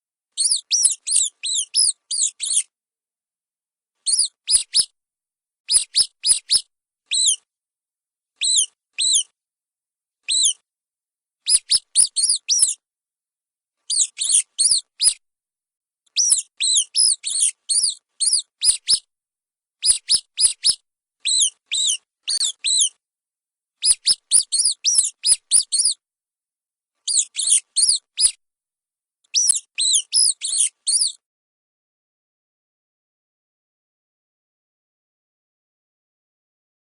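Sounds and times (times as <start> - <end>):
mice squeaking: 0.4 - 2.7, 4.1 - 4.9, 5.7 - 7.4, 8.4 - 9.3, 10.3 - 10.6, 11.5 - 12.8, 13.9 - 15.2, 16.1 - 19.0, 19.8 - 23.0, 23.8 - 26.0, 27.1 - 28.4, 29.3 - 31.2.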